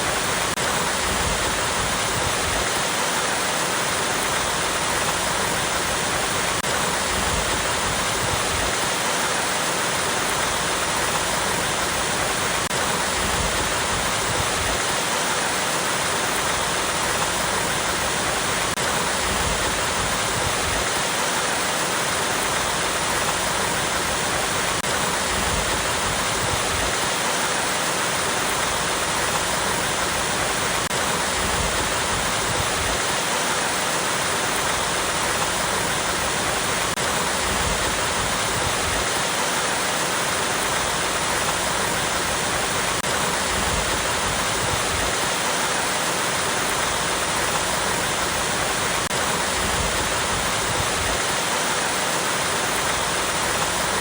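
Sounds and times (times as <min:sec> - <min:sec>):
waterfall rushing over rocks: 0:00.0 - 0:54.0.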